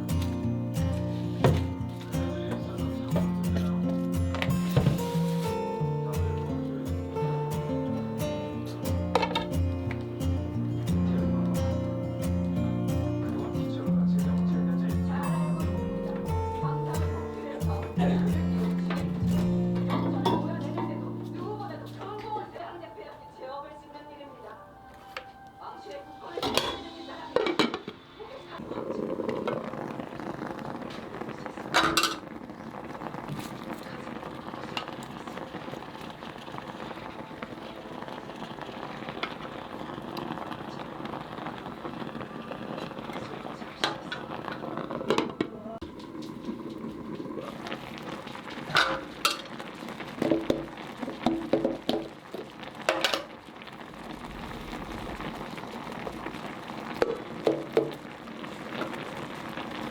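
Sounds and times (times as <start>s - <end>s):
food sizzling in a pan: 0.0s - 59.9s
metal utensil clinking on pan: 31.8s - 32.2s, 48.7s - 49.5s.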